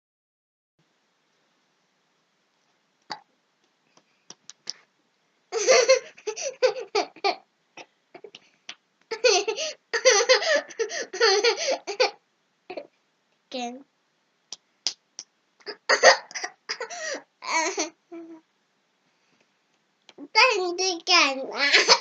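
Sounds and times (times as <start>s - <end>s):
child giggling: 5.5s - 7.4s, 9.1s - 12.9s, 15.7s - 18.4s, 21.6s - 22.0s
child hiccuping: 15.6s - 16.9s.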